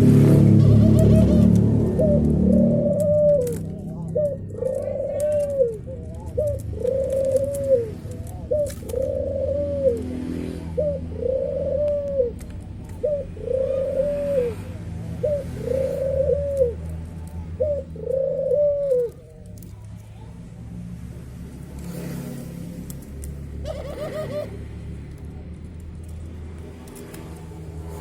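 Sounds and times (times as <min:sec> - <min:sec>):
dove cooing: 0:00.3 - 0:19.6, 0:23.6 - 0:24.6.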